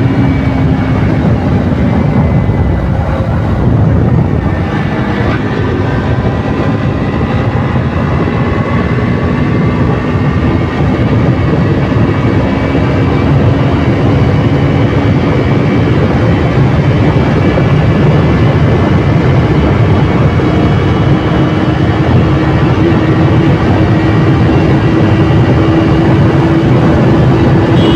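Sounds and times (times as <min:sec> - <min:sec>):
low rushing noise: 0:00.0 - 0:07.1
motorcycle engine running: 0:00.0 - 0:27.9.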